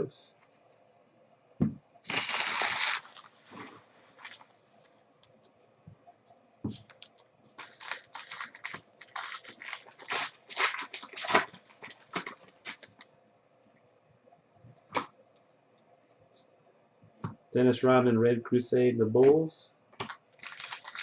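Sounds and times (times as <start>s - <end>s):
wrappers crinkling and tearing: 2.0s - 4.5s, 6.8s - 13.1s, 20.0s - 21.0s.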